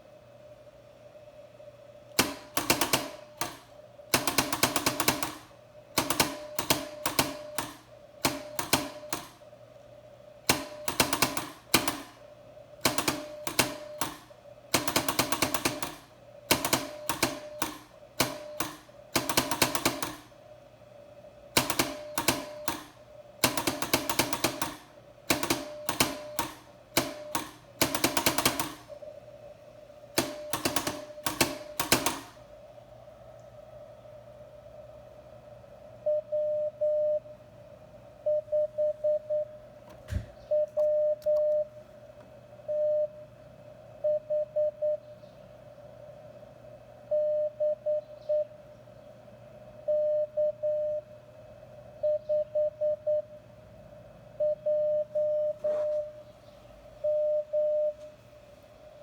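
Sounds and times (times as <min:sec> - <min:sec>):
rattling telegraph clicks: 0:02.1 - 0:09.4, 0:10.4 - 0:12.2, 0:12.8 - 0:20.3, 0:21.5 - 0:29.0, 0:30.1 - 0:32.4
morse code beeps: 0:36.0 - 0:37.4, 0:38.2 - 0:39.6, 0:40.5 - 0:41.8, 0:42.7 - 0:43.2, 0:44.0 - 0:45.1, 0:47.1 - 0:48.5, 0:49.9 - 0:51.1, 0:52.0 - 0:53.4, 0:54.4 - 0:56.2, 0:57.0 - 0:58.1.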